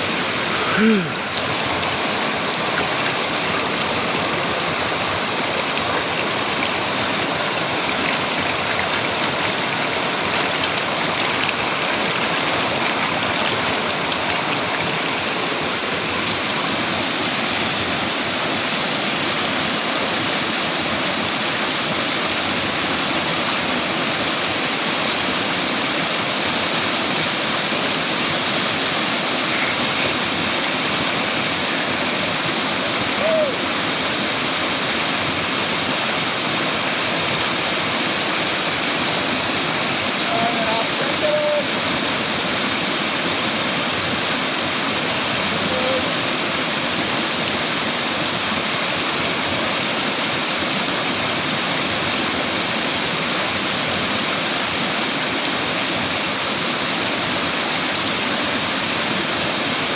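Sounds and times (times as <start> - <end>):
creek water rushing: 0.0 - 59.9.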